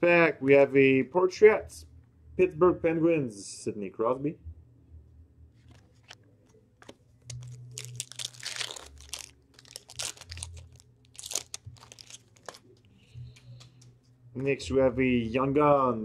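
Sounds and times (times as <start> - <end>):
cards being handled: 5.6 - 14.0
wrapper tearing and crinkling: 6.8 - 12.8.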